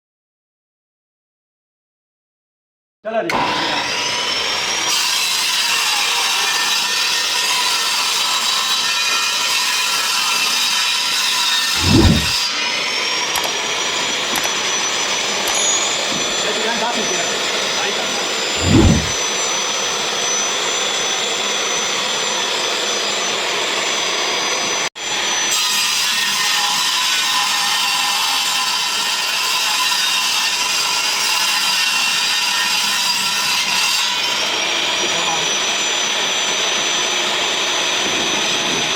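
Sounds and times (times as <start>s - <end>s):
power tool cutting board: 18.6s - 19.2s.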